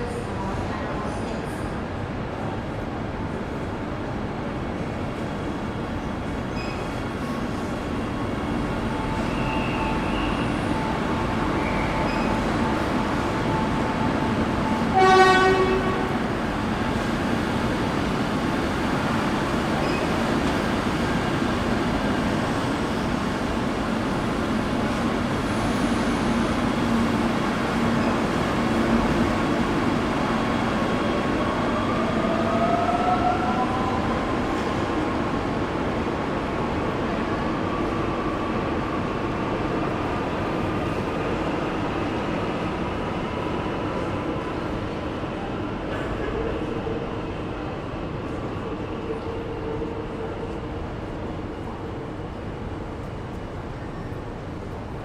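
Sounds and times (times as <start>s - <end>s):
train rumbling: 0.0s - 55.0s
train horn toot: 8.9s - 16.3s.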